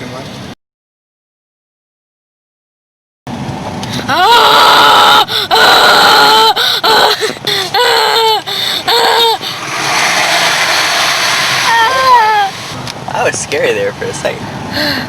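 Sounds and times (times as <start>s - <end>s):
person screaming in fright: 4.0s - 9.6s, 11.6s - 12.6s
gasping breaths: 6.6s - 7.8s, 8.4s - 9.7s, 14.7s - 15.0s.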